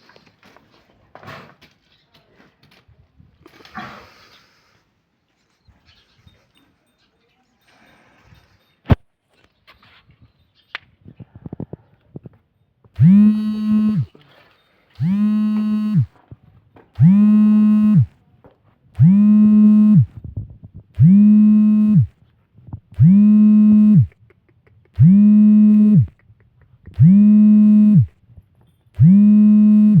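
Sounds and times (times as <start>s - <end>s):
sliding electronic tone: 13.0s - 14.1s, 15.0s - 16.1s, 17.0s - 18.1s, 19.0s - 20.1s, 21.0s - 22.1s, 23.0s - 24.1s, 25.0s - 26.1s, 27.0s - 28.1s, 29.0s - 30.0s.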